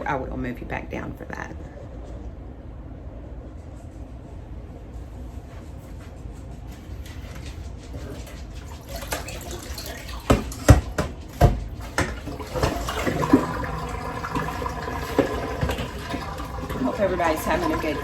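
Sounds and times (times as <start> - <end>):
water running: 7.0 - 18.0
water draining into sink: 8.6 - 18.0
potatoes and pot clunking: 8.7 - 18.0.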